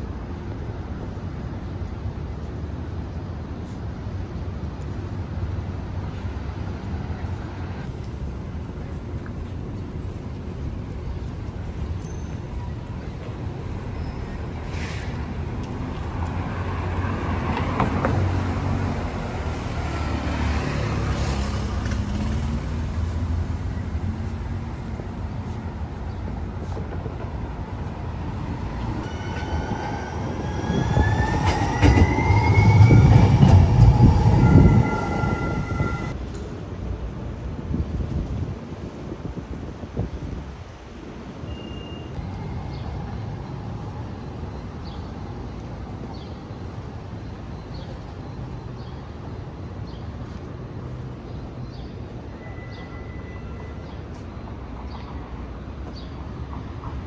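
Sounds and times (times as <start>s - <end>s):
street traffic: 0.0s - 57.0s
rising whine: 28.0s - 36.2s.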